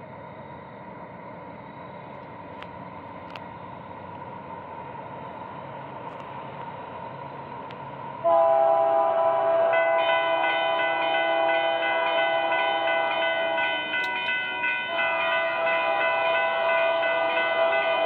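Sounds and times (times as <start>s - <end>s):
freight train rumble: 0.0s - 18.0s
locomotive air horn chord: 8.2s - 13.3s, 14.9s - 18.0s.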